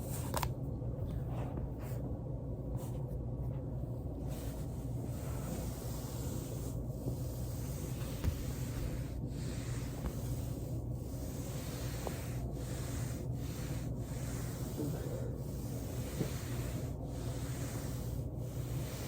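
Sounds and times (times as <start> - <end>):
body rubbing on foam roller: 4.2 - 19.0.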